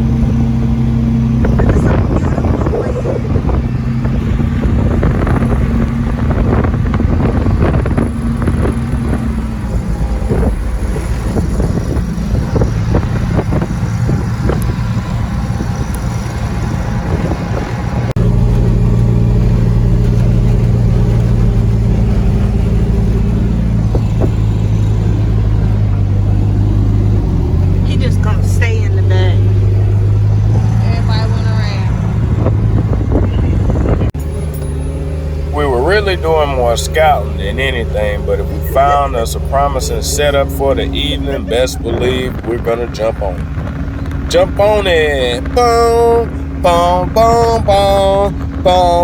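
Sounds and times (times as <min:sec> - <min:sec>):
vehicle engine running: 0:00.0 - 0:49.0.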